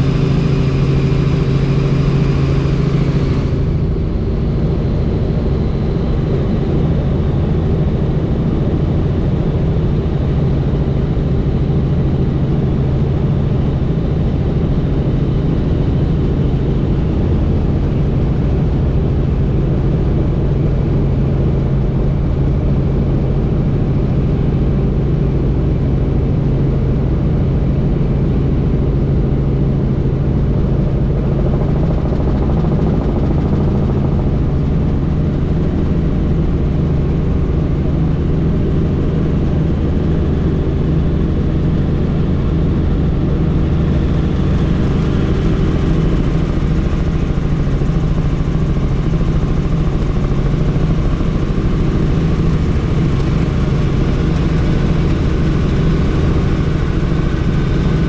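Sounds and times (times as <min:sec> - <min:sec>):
helicopter engine and rotors drone: 0:00.0 - 0:58.0.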